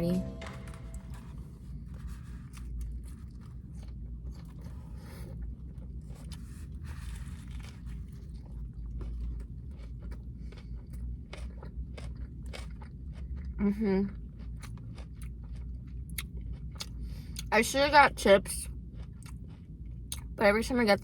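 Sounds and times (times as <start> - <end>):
person biting and chewing: 2.4 - 13.3.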